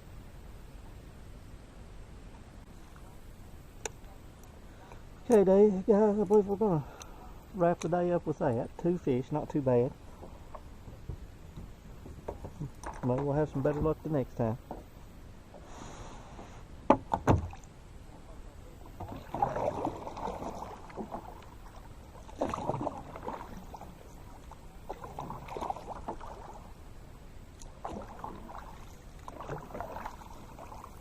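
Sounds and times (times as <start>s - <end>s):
paddle strokes splashing water: 18.6s - 31.0s.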